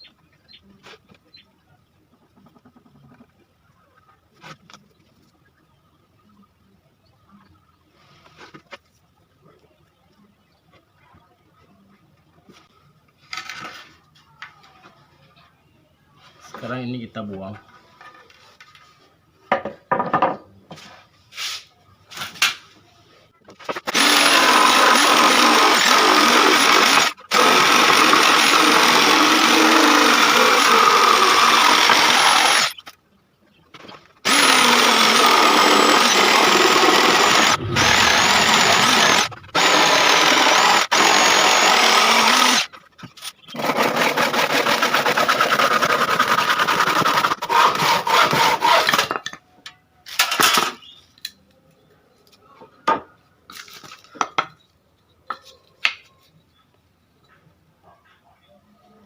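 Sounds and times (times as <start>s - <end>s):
power tool cutting wood: 23.8s - 32.8s, 34.2s - 42.7s, 43.5s - 49.1s.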